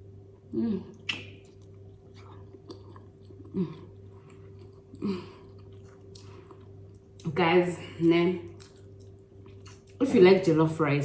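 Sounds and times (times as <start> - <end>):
person chewing: 0.9 - 7.3, 8.0 - 10.0.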